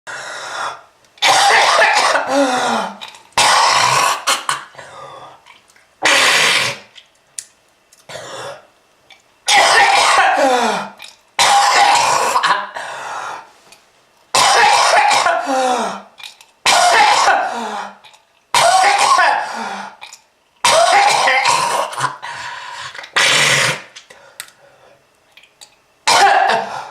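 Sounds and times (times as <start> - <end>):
person coughing hard: 1.2 - 4.8, 6.0 - 6.9, 8.1 - 8.7, 9.5 - 12.9, 14.4 - 18.0, 18.6 - 20.0, 20.6 - 22.2, 26.0 - 26.9.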